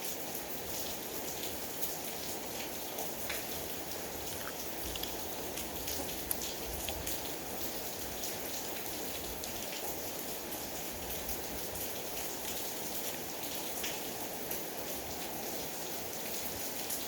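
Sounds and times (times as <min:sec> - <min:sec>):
steady rain falling: 0:00.0 - 0:17.0
raindrops ticking: 0:02.6 - 0:09.8.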